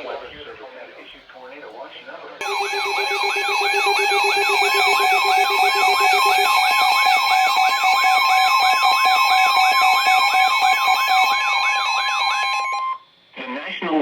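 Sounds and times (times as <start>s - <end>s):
high continuous alarm tone: 2.4s - 13.0s
yelp siren sweep: 2.4s - 13.0s.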